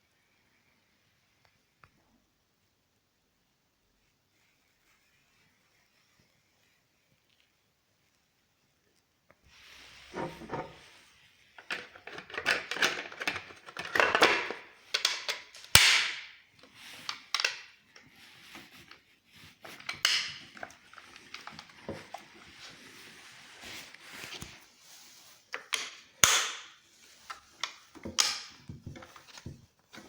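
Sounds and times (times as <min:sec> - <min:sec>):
objects clattering and rustling: 0:09.5 - 0:15.8, 0:16.6 - 0:24.8.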